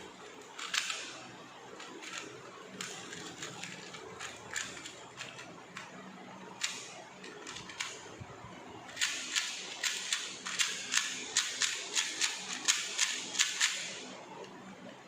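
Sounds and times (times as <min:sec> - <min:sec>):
puzzle cube layers clicking: 0:09.0 - 0:14.0.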